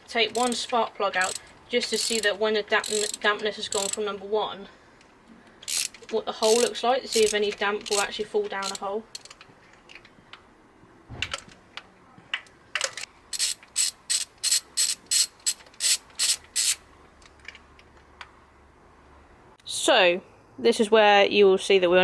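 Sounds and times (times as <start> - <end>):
socket ratchet clicking: 0.3 - 4.0, 5.6 - 9.4, 13.3 - 16.8.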